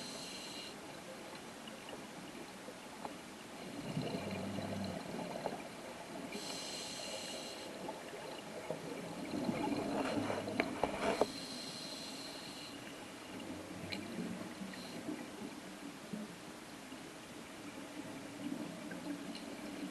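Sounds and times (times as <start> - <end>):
regulator inhalation hiss: 0.0 - 0.8, 6.4 - 7.7, 11.4 - 12.8
bubbling exhalation underwater: 3.7 - 5.4.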